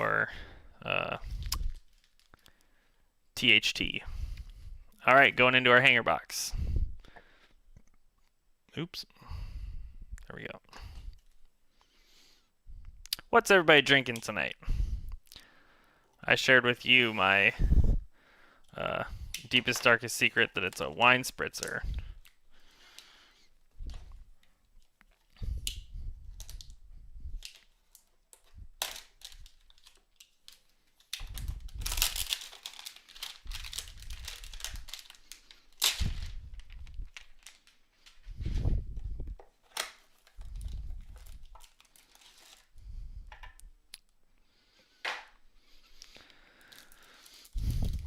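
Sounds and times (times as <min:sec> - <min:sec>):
plastic wrapper crinkling and tearing: 0:01.3 - 0:02.7, 0:23.9 - 0:38.4, 0:39.4 - 0:42.8, 0:45.9 - 0:48.0.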